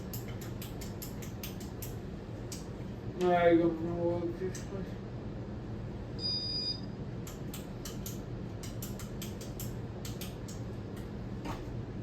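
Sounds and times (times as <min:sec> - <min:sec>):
fan control buttons clicking: 0:00.0 - 0:03.4, 0:07.2 - 0:11.1
low steady hum: 0:00.0 - 0:12.0
short high beep: 0:06.2 - 0:06.9.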